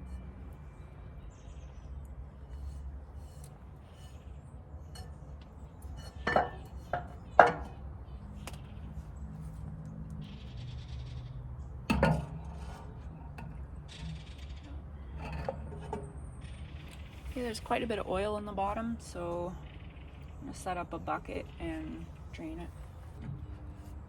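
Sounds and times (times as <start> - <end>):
low steady hum: 0.0 - 24.0
metal parts and tools clinking: 6.0 - 7.7.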